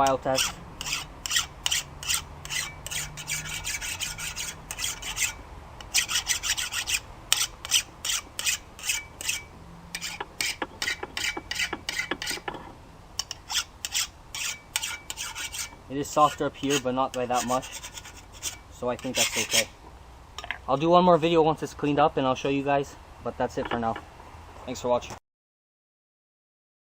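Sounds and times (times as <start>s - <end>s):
file scraping steel: 0.0s - 19.8s.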